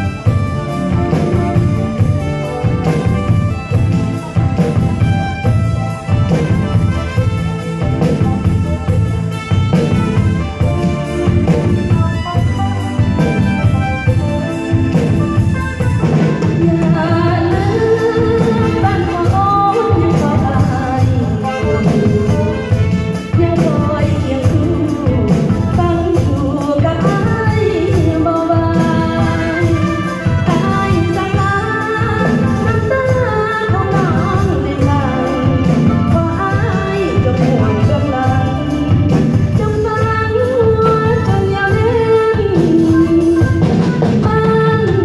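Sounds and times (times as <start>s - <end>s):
amplified band with drum beat: 0.0s - 45.0s
person singing: 16.5s - 45.0s.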